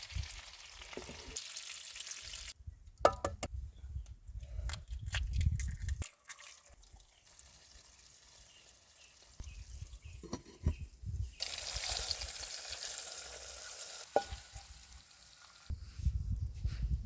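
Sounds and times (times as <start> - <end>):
food sizzling in a pan: 0.0 - 2.6, 11.4 - 15.7.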